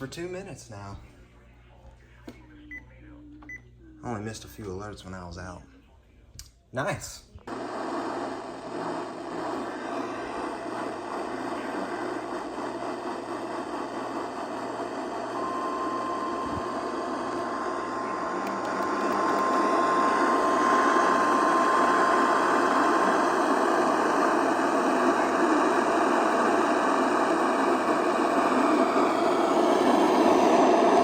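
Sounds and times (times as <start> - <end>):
radio static hiss: 7.5 - 31.0.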